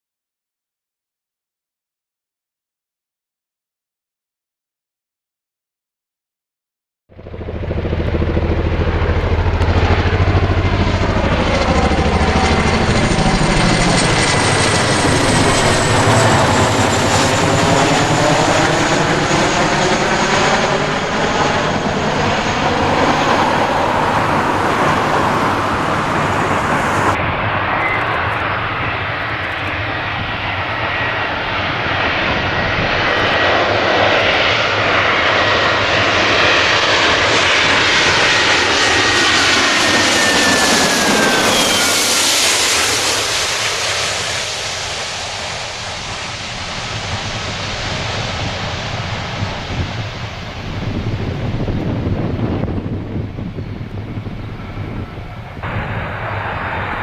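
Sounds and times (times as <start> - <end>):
jet engines running loud: 7.2 - 57.0
high whine falling in pitch: 7.6 - 31.8, 39.6 - 57.0.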